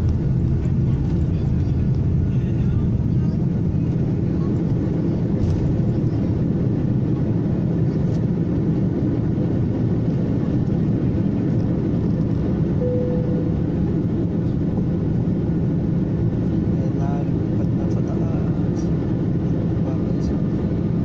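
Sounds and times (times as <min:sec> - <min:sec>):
airliner engine rumble: 0:00.0 - 0:21.0
short steady tone: 0:12.8 - 0:13.8.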